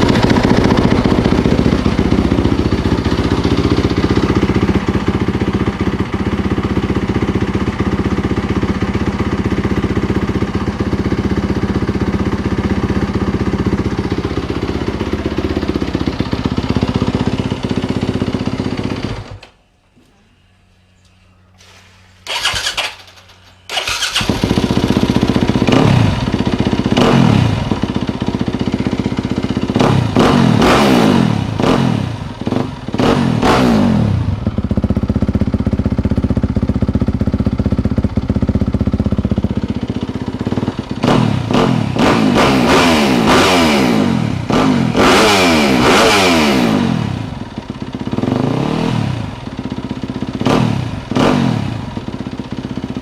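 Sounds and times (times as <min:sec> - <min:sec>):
motorcycle engine revving: 0:00.0 - 0:19.5, 0:22.2 - 0:53.0
motorcycle engine idling: 0:00.0 - 0:19.6, 0:22.3 - 0:53.0.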